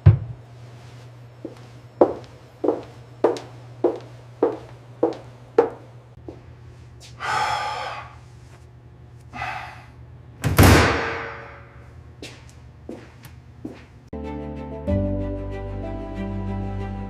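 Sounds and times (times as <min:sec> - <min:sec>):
breathy hissing: 0:07.2 - 0:08.3, 0:09.3 - 0:10.0
loud ringing slam: 0:10.6 - 0:11.8.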